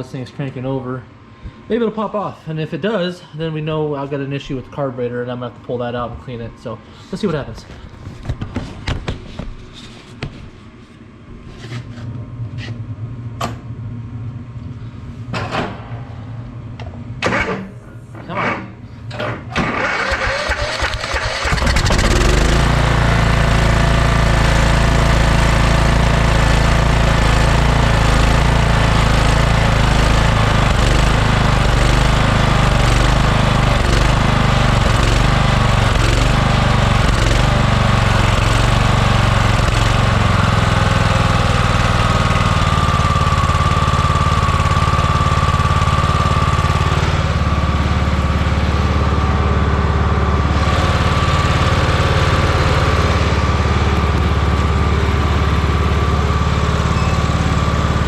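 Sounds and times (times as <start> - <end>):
steady whine: 0.0 - 8.9
lawn mower engine cranking: 19.6 - 58.0
lawn mower engine running: 19.6 - 58.0.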